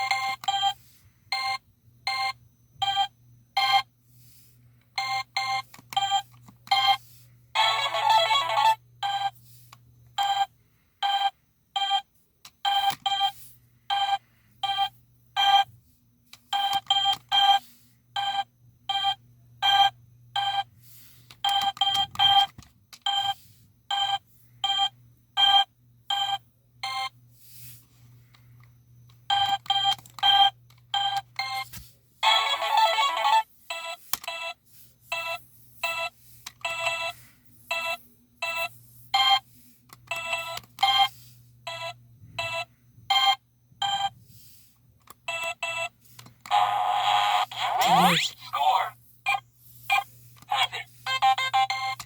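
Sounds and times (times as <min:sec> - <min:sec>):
short electronic beeps: 0:47.7 - 0:50.0.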